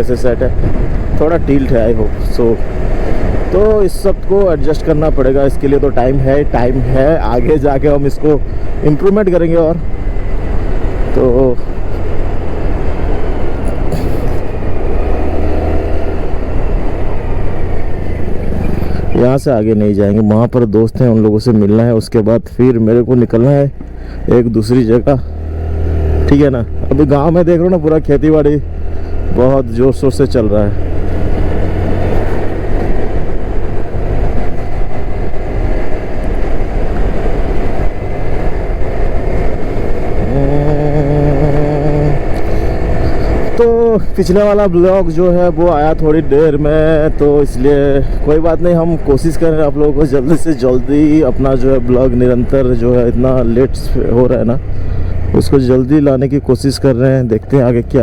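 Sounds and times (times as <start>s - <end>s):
wind buffeting microphone: 0.0s - 19.4s, 30.8s - 55.4s
motorcycle engine running: 0.0s - 19.6s, 23.4s - 58.0s
steady low tone: 30.2s - 55.6s.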